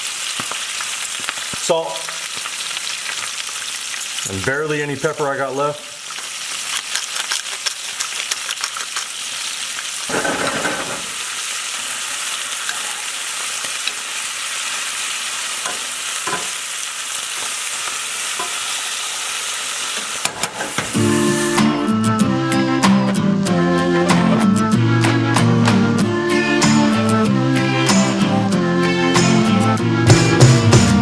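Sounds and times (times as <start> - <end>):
vegetables sizzling in a frying pan: 0.0 - 21.5
utensil clicking and scraping: 6.7 - 9.1.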